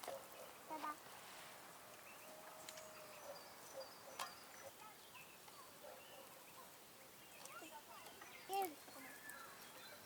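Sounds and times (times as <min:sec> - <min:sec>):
faint bird chirps: 0:02.0 - 0:10.0.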